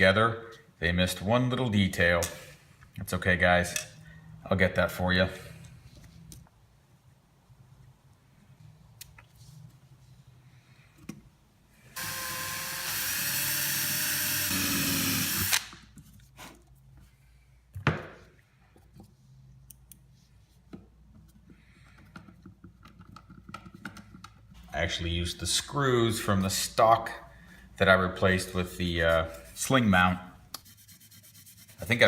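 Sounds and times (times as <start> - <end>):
electric drill running: 12.0 - 15.7.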